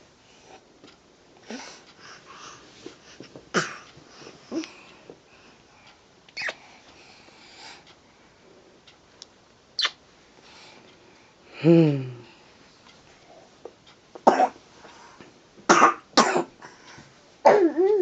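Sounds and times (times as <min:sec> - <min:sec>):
person coughing: 0:15.7 - 0:16.5, 0:17.4 - 0:17.9.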